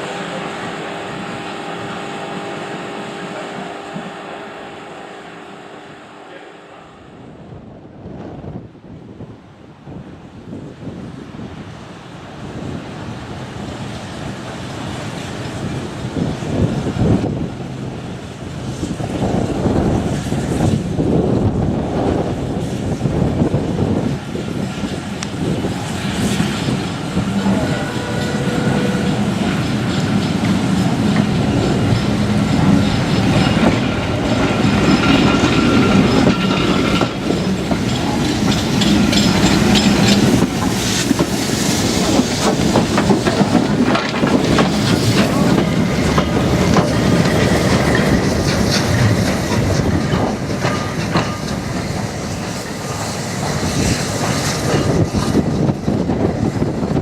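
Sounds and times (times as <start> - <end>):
steam locomotive running: 0.0 - 8.6, 9.9 - 57.0
wheels clattering over rail joints: 22.5 - 56.9.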